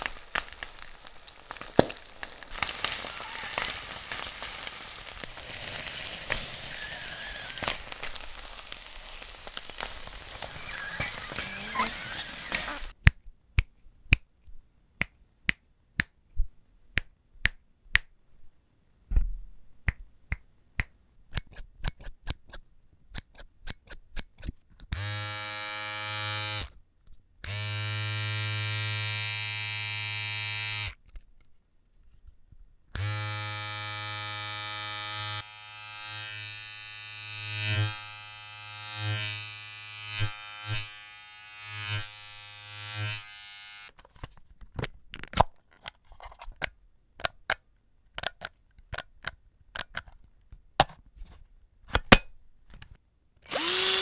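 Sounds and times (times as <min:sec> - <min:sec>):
small electric motor buzzing: 0:00.0 - 0:13.0, 0:25.0 - 0:26.7, 0:27.4 - 0:31.0, 0:33.0 - 0:43.9, 0:53.5 - 0:54.0.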